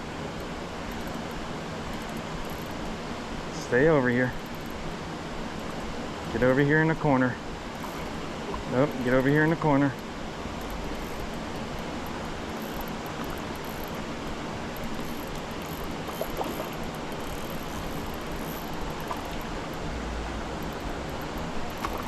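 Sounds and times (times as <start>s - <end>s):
creek water rushing: 10.1s - 22.0s.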